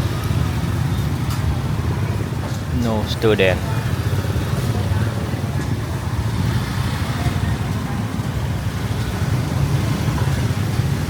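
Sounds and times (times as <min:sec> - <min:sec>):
road traffic rumble: 0:00.0 - 0:11.0.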